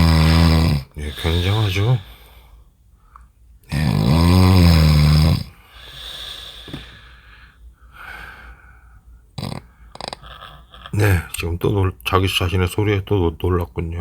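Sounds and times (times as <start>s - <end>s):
man snoring: 0.0s - 2.1s, 3.7s - 6.8s, 9.4s - 11.0s
hissing breaths: 0.0s - 11.0s.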